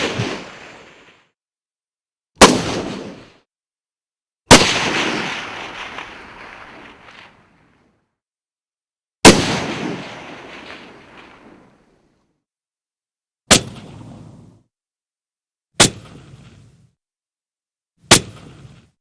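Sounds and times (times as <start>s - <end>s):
rifle shots with echo: 2.4s - 3.1s, 4.5s - 7.3s, 9.2s - 11.5s.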